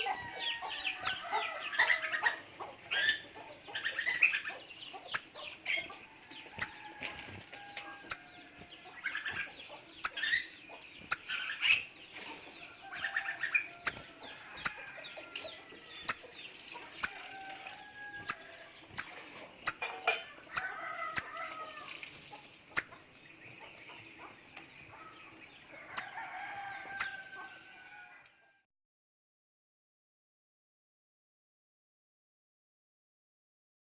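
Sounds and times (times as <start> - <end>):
lower bird calls: 7.6 - 28.2.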